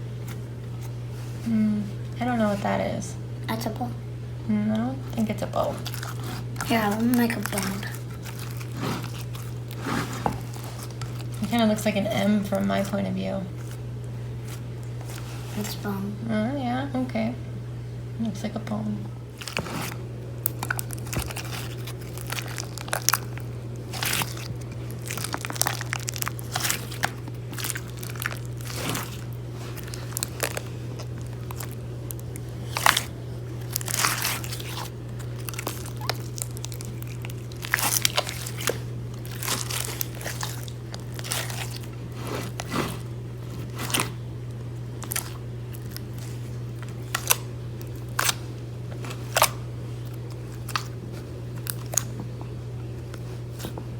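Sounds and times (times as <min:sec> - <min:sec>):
low steady hum: 0:00.0 - 0:53.9
slime squishing and crackling: 0:05.2 - 0:13.8, 0:19.4 - 0:52.2.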